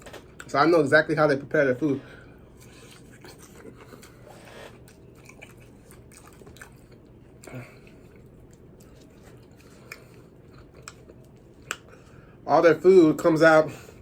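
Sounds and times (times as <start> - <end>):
person chewing food: 2.3 - 12.4.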